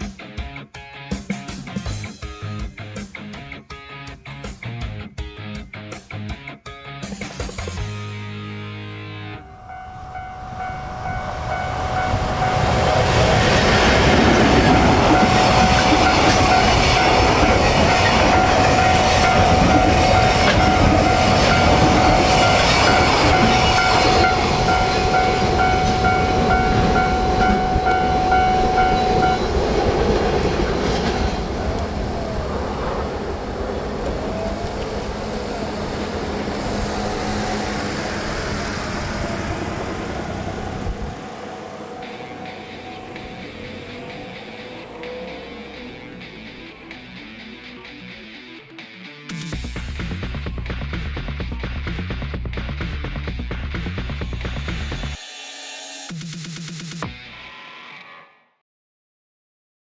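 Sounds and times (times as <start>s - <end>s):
level crossing warning bell: 9.3s - 48.2s
freight train wheels on rails: 9.4s - 48.5s, 49.3s - 57.0s.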